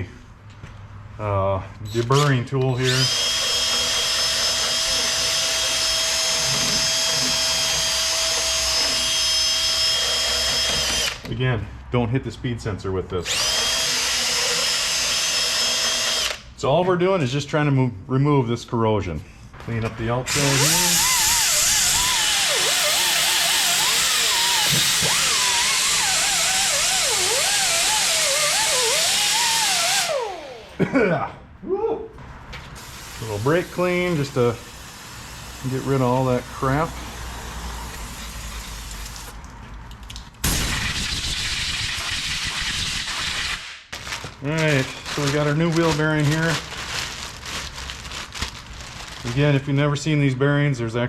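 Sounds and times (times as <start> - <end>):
deburring tool whining: 2.1 - 11.3, 20.3 - 30.8.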